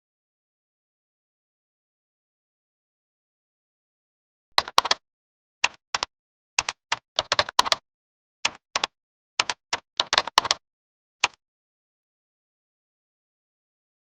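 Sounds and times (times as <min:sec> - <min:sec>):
keyboard key clicks: 0:04.6 - 0:05.0, 0:05.6 - 0:07.8, 0:08.5 - 0:10.6.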